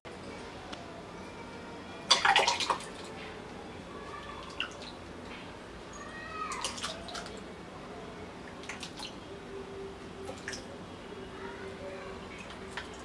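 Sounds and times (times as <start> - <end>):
liquid dripping: 2.1 - 3.2, 6.4 - 7.4, 8.4 - 9.2, 10.2 - 10.7, 12.3 - 13.0.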